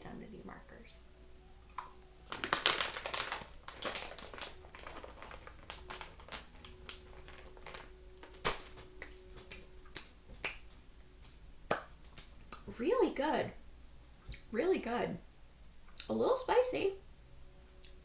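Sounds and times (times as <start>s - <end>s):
crunchy snack being chewed: 1.7s - 7.9s
snack bag crinkling: 1.7s - 10.8s.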